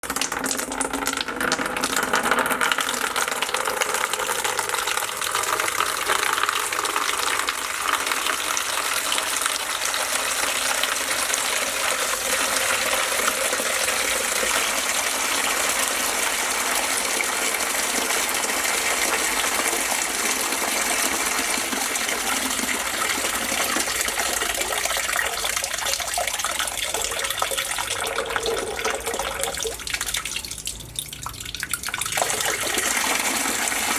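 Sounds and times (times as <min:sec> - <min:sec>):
water running from faucet: 0:00.0 - 0:33.9.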